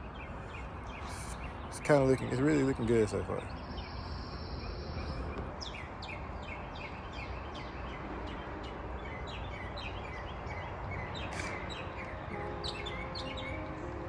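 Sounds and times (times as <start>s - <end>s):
birds chirping: 0.0s - 14.0s
quiet background music: 7.5s - 14.0s.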